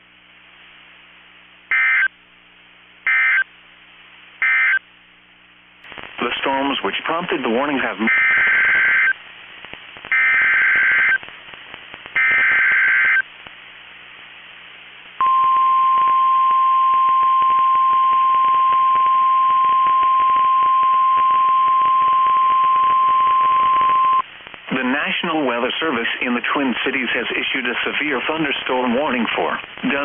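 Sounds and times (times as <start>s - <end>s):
steady warning alarm tone: 8.1s - 9.1s
buzzy digital data bursts: 8.1s - 9.2s, 10.1s - 11.2s, 12.2s - 13.2s.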